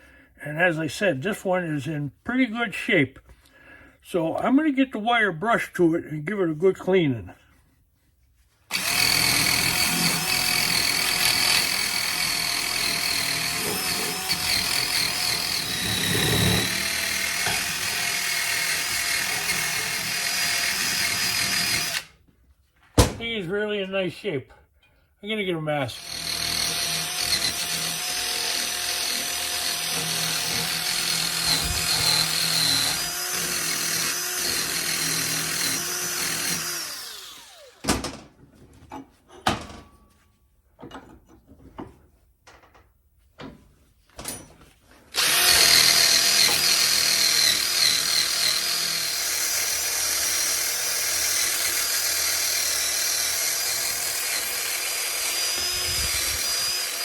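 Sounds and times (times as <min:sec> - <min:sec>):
wire-wheel brush whirring: 0:08.7 - 0:22.1, 0:26.0 - 0:37.8, 0:45.1 - 0:57.0
knocks: 0:23.0 - 0:23.2.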